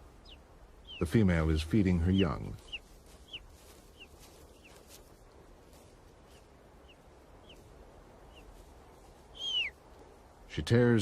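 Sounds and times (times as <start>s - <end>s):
eagle chicks cheeping: 0.0s - 5.1s, 6.2s - 9.8s
low background hiss: 0.0s - 11.0s.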